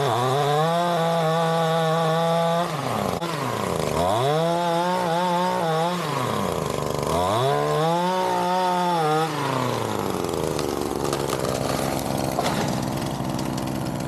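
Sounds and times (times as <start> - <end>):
chainsaw engine revving: 0.0 - 14.0.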